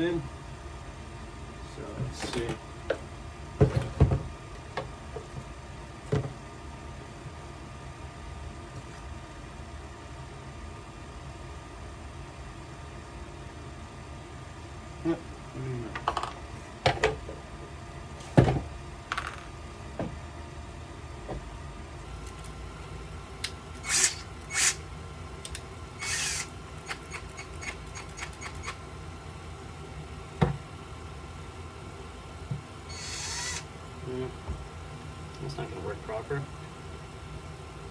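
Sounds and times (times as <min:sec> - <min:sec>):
clicks and knocks of tools: 0:25.4 - 0:25.7, 0:26.8 - 0:28.8.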